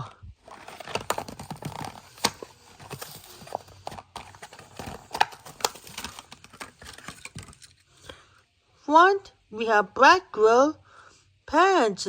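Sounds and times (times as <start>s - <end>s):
plastic blister pack pulled open: 0.4s - 7.7s.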